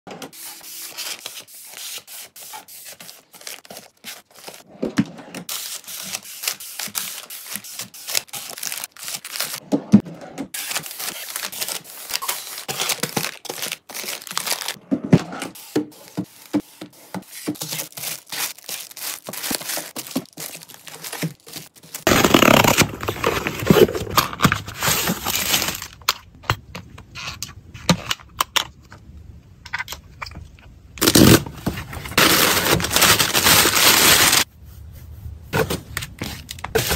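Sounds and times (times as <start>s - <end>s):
packaging crinkling and tearing: 5.5s - 9.6s, 10.6s - 14.8s, 17.6s - 26.1s, 31.0s - 34.5s.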